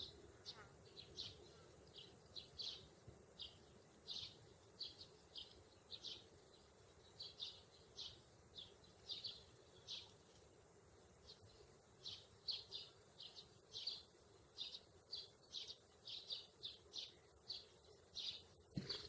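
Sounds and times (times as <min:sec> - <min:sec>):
sparrows chirping: 0:00.0 - 0:19.0.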